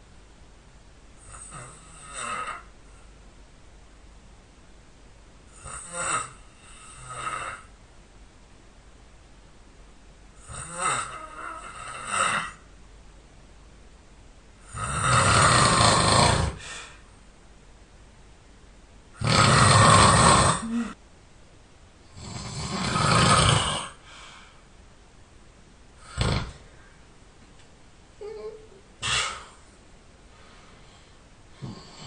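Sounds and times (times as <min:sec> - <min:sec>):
person snoring: 0:01.2 - 0:02.7, 0:05.5 - 0:07.7, 0:10.4 - 0:12.6, 0:14.6 - 0:17.0, 0:19.2 - 0:21.0, 0:22.1 - 0:24.1, 0:26.0 - 0:26.7, 0:31.5 - 0:32.0.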